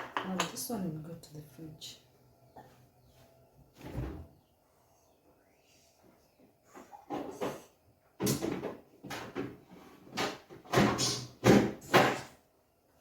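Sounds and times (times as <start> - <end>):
refrigerator door knocks and thuds: 10.6 - 12.3.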